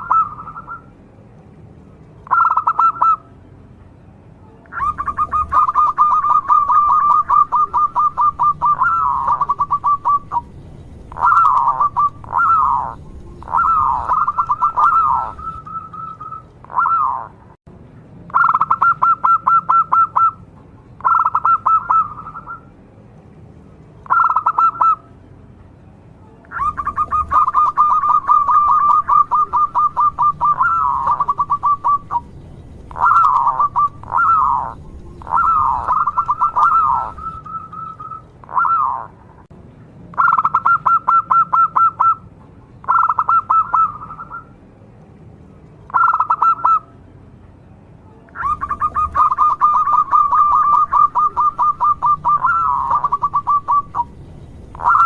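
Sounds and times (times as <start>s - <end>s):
dove cooing: 0.0s - 0.8s, 2.2s - 3.2s, 4.7s - 10.5s, 11.1s - 17.4s, 18.4s - 20.4s, 21.0s - 22.6s, 24.1s - 25.0s, 26.5s - 32.3s, 32.9s - 39.2s, 42.9s - 44.5s, 48.4s - 55.0s.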